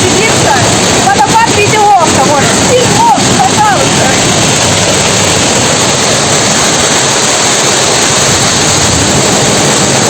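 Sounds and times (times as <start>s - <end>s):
waterfall rushing: 0.0s - 10.0s.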